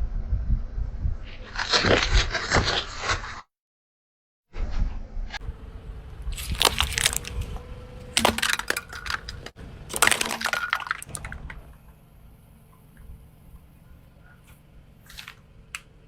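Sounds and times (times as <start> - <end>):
low rumble: 0.0 - 1.5, 4.6 - 16.0
objects crunching under tyre: 5.4 - 16.0.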